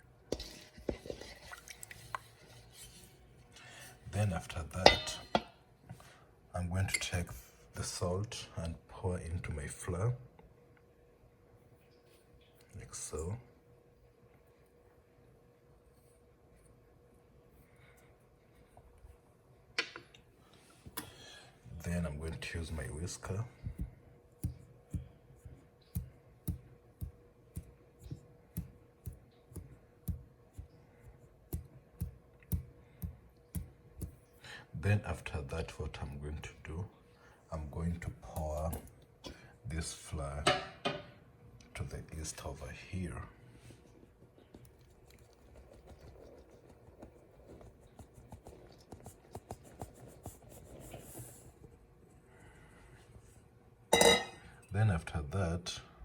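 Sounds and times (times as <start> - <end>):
faint scraping of bowl: 0.3 - 4.1.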